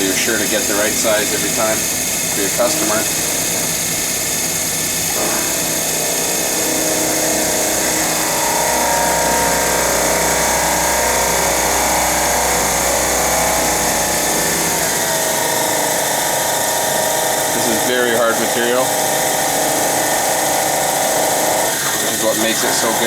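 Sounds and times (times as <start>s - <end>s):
drill bit whining: 0.0s - 23.0s
lathe running: 0.0s - 23.0s.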